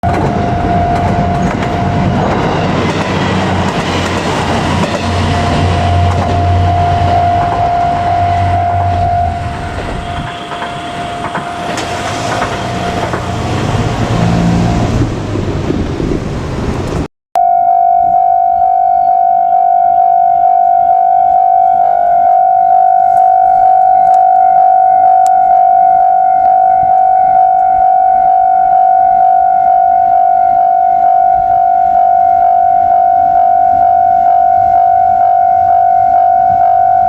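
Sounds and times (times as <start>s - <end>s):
crossing warning bell ringing: 0.0s - 14.9s, 17.4s - 37.0s
diesel engine running: 0.0s - 17.1s
train wheels clacking on rails: 0.1s - 8.2s, 8.8s - 17.0s.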